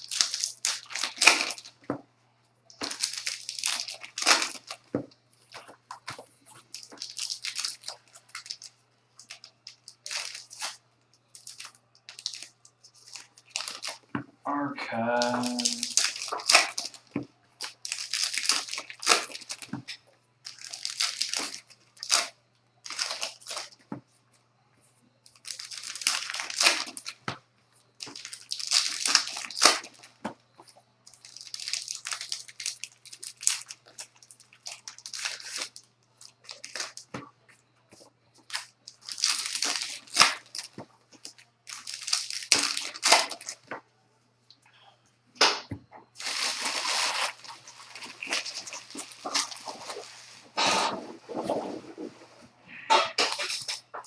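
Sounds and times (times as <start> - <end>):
card pack wrappers tearing: 0.0 - 1.8, 2.8 - 4.9, 5.5 - 10.8, 11.4 - 14.1, 15.2 - 19.8, 20.4 - 23.8, 25.3 - 27.2, 28.0 - 30.2, 31.1 - 37.2, 38.4 - 43.6, 46.2 - 51.5.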